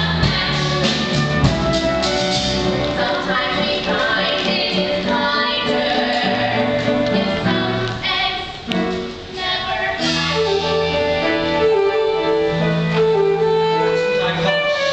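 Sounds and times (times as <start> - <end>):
several voices singing together: 0.0 - 1.4, 2.7 - 11.2
instrumental accompaniment: 0.0 - 14.9.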